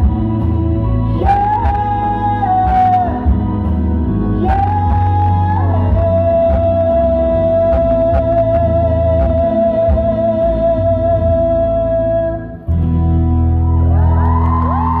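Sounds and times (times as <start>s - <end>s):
guitar music: 0.0s - 15.0s.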